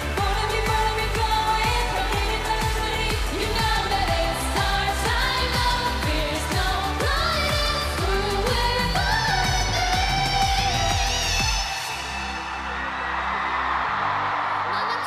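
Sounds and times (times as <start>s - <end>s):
pop beat with sliding bass: 0.0s - 12.0s
women singing: 0.0s - 12.3s.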